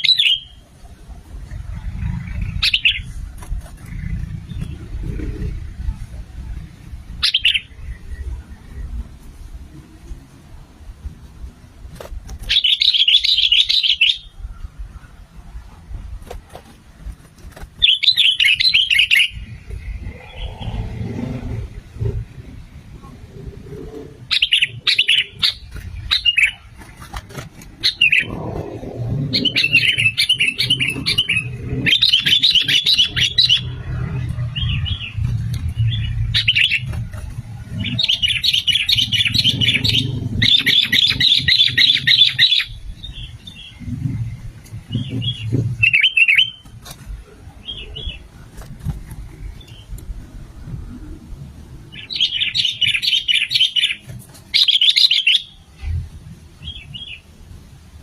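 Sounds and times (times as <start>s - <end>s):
bird chattering song: 0.0s - 0.6s, 1.5s - 6.1s, 7.2s - 8.9s, 12.4s - 14.6s, 17.8s - 21.2s, 24.3s - 46.7s, 47.5s - 48.3s, 51.9s - 55.6s
low background rumble: 0.0s - 54.6s.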